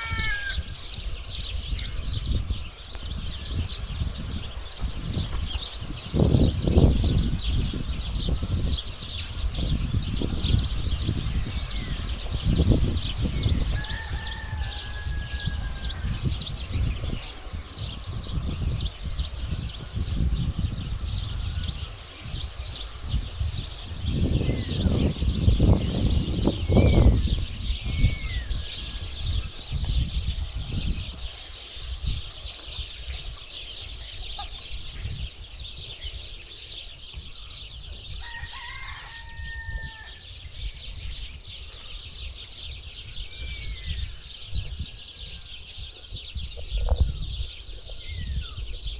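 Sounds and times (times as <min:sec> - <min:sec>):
rooster crowing: 0:00.0 - 0:00.8, 0:13.6 - 0:16.3, 0:38.2 - 0:40.3
small birds chirping: 0:00.0 - 0:48.9.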